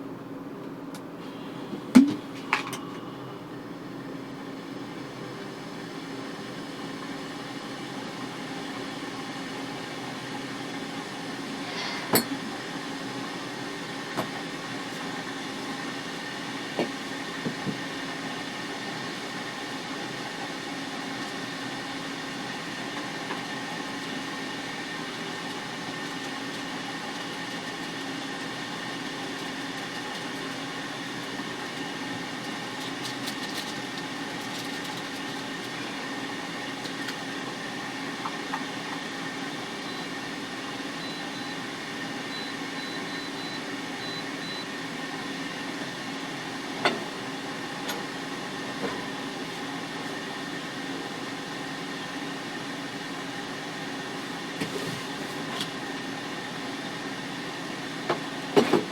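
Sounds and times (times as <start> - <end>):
mechanical hum: 0.0 - 58.9.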